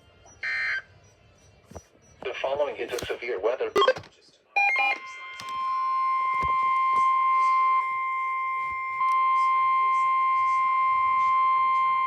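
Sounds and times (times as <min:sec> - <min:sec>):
loud electronic alarm beep: 0:00.3 - 0:02.2, 0:04.6 - 0:12.0.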